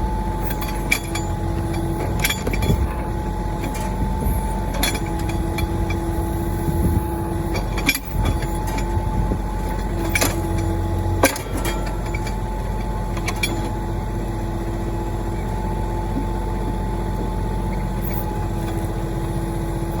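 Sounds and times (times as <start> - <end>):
steady whine: 0.0 - 14.5
diesel tractor engine running: 0.0 - 20.0
sharp metal clanks: 11.2 - 12.6.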